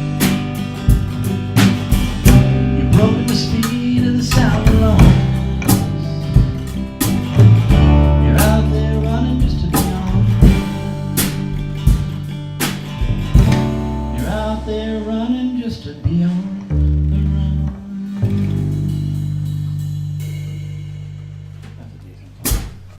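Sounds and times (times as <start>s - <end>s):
drums beating: 0.0s - 15.0s, 18.3s - 22.9s
band playing country-folk song: 0.0s - 20.5s
guitar: 0.0s - 22.9s.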